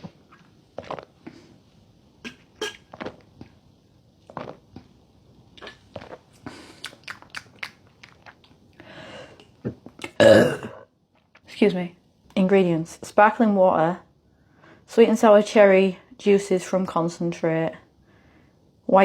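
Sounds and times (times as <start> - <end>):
wet mouth clicks and swallows: 4.3 - 4.9, 5.6 - 8.6.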